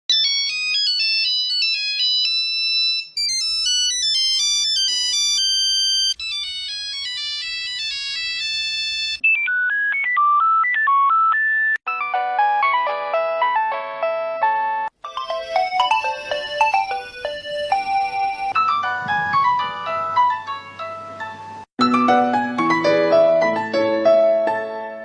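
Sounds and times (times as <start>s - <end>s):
electronic phone ringtone melodies: 0.1s - 13.5s, 15.0s - 21.0s.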